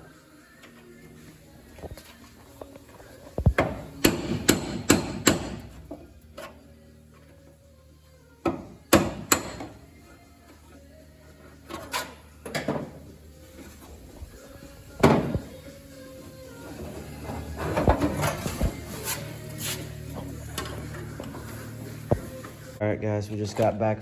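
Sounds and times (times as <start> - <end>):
hammer strikes on metal: 3.6 - 5.8, 8.5 - 9.8.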